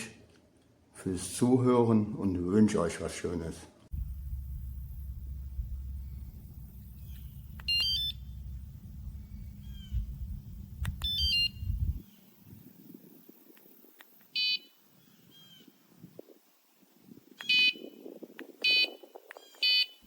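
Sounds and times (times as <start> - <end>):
low rumble: 3.9 - 12.0
electronic alarm chirps: 4.0 - 8.6, 11.0 - 11.9, 14.4 - 14.8, 17.4 - 17.9, 18.6 - 20.0
brief electronic beep: 18.6 - 19.0.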